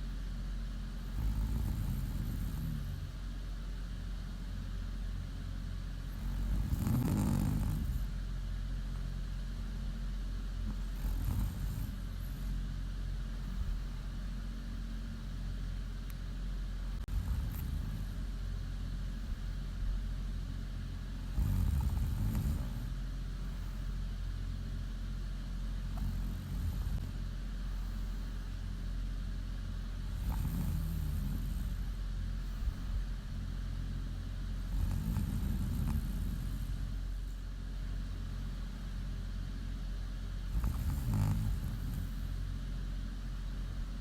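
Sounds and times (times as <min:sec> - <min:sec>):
steady low hum: 0:00.0 - 0:44.0
woman snoring: 0:01.0 - 0:03.2, 0:06.1 - 0:08.2, 0:10.7 - 0:12.6, 0:17.0 - 0:18.3, 0:21.2 - 0:23.9, 0:25.8 - 0:27.2, 0:30.0 - 0:32.0, 0:34.6 - 0:37.0, 0:40.4 - 0:42.4.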